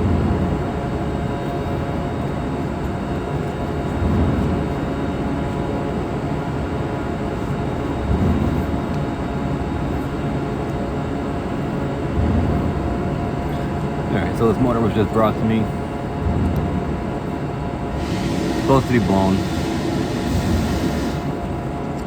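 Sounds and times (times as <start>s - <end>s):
steady rushing noise: 17.9s - 21.6s
faint hum: 17.9s - 21.7s.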